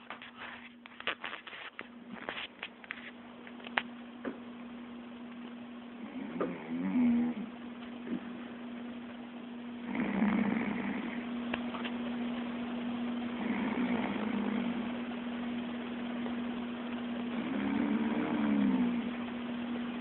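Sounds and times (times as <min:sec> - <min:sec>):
steady low hum: 0:00.0 - 0:20.0
chicken snoring: 0:06.0 - 0:08.4, 0:09.8 - 0:11.4, 0:13.3 - 0:15.1, 0:17.3 - 0:19.4.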